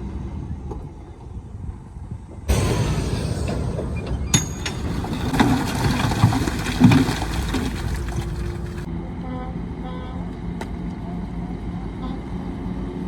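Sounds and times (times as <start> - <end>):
heavy machinery rumbling: 2.5 - 8.9
low thumps: 2.5 - 8.9
sharp metal clank: 2.5 - 8.9.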